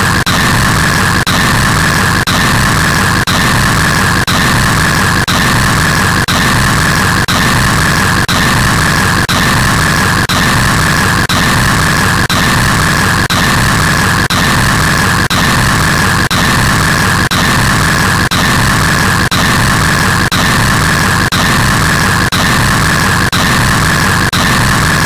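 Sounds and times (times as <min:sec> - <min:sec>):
harsh white noise: 0:00.0 - 0:25.0.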